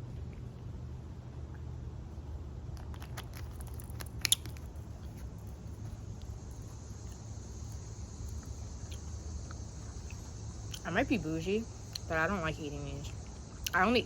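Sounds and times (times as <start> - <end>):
steady low rumble: 0.0 - 14.0
crisp clicks: 2.7 - 5.3
person chewing food: 2.7 - 10.8.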